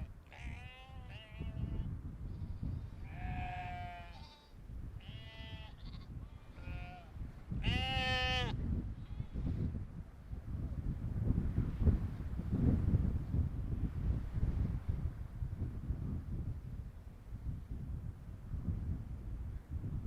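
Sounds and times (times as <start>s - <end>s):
sheep bleating: 0.3s - 1.9s, 3.0s - 8.6s.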